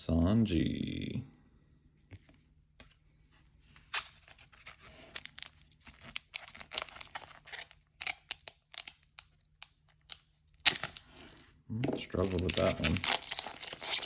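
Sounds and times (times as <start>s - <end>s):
foil wrapper tearing and crinkling: 4.5s - 11.1s, 12.1s - 14.0s.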